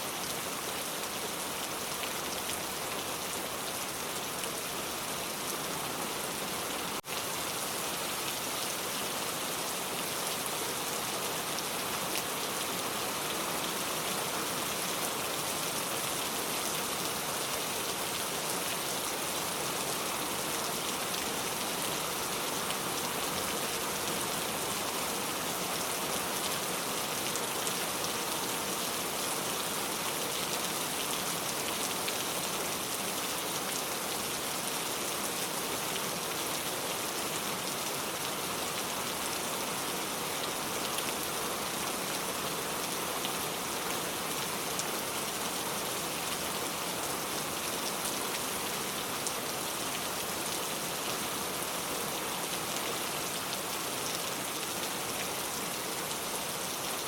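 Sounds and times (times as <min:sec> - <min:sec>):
steady rain patter: 0:00.0 - 0:57.0.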